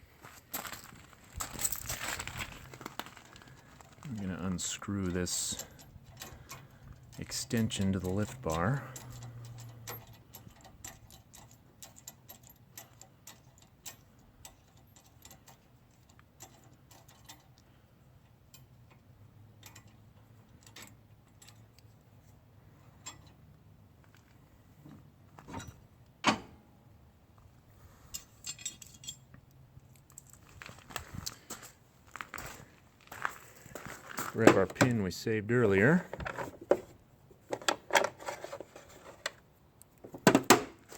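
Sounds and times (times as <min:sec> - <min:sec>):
light metallic clicks and clinks: 0:03.4 - 0:26.4, 0:28.0 - 0:30.4
heavy metal clunk: 0:24.8 - 0:26.7, 0:40.1 - 0:40.9.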